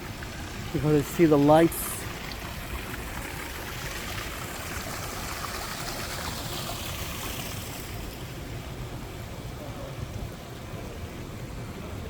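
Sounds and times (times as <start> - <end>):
running water rushing: 0.0 - 12.0.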